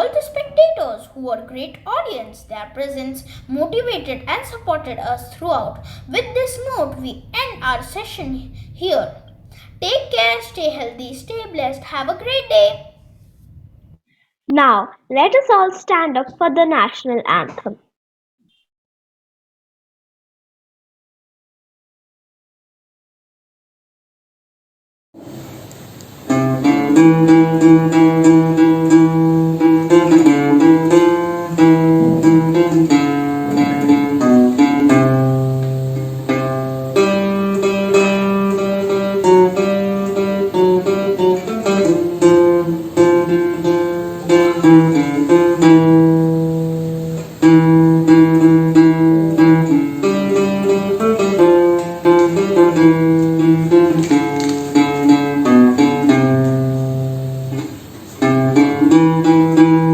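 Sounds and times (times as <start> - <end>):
acoustic guitar music: 0.0 - 9.1, 9.8 - 12.8, 25.2 - 59.9.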